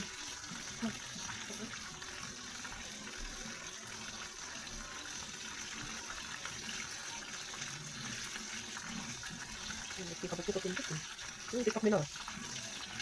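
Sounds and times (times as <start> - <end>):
oil sizzling in a frying pan: 0.0 - 13.0.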